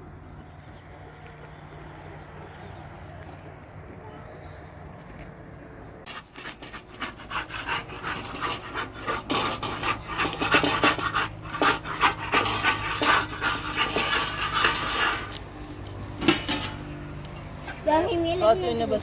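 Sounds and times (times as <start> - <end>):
hard object scraping a surface: 6.1 - 15.5, 16.2 - 17.0.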